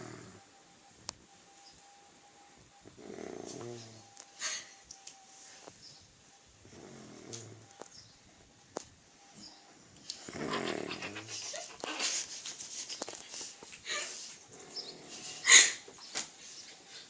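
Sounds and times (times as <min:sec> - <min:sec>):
breathy noises: 0:09.3 - 0:17.0.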